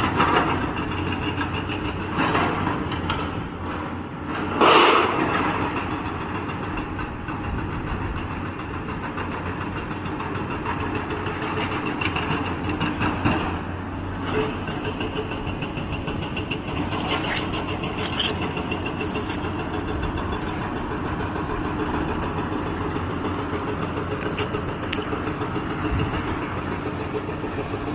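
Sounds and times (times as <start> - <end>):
sharp noises: 16.9 - 19.6.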